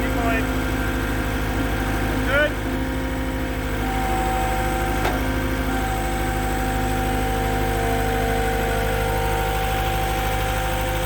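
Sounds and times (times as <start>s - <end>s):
machine engine idling with whine: 0.0s - 11.0s.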